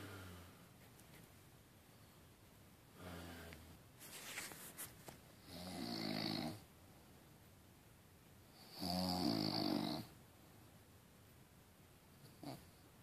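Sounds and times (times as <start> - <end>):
person snoring: 3.0 - 3.7.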